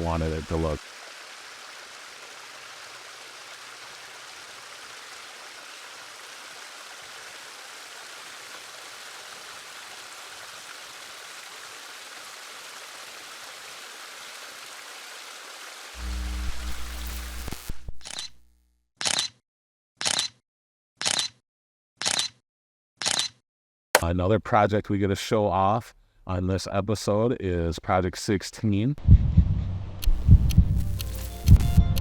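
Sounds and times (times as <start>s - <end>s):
water running over rocks: 0.0s - 17.1s.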